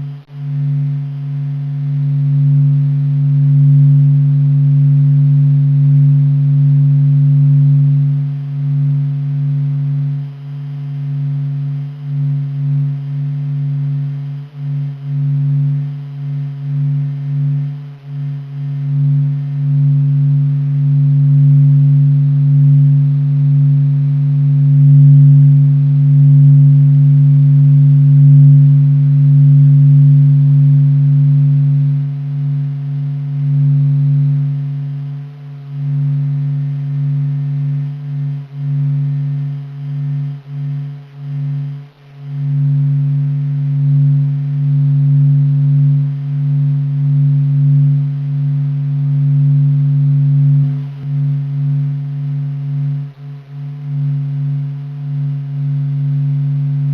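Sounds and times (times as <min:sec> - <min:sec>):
deep steady hum: 0:00.0 - 0:56.9.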